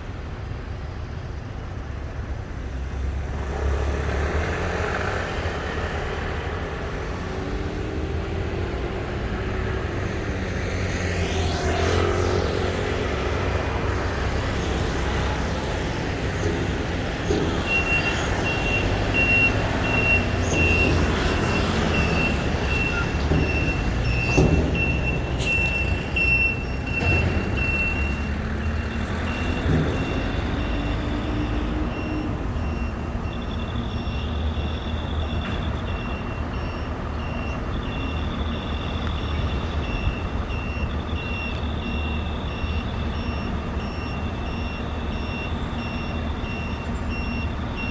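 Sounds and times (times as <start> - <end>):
large vehicle engine rumble: 0.0 - 47.9
electronic warning beeps: 14.6 - 47.9.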